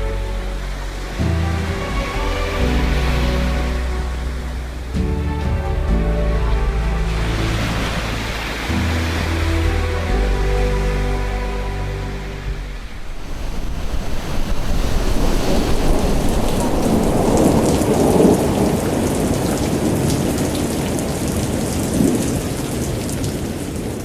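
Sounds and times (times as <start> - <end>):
heavy rain falling: 12.6 - 24.0
rolling thunder: 12.7 - 23.1.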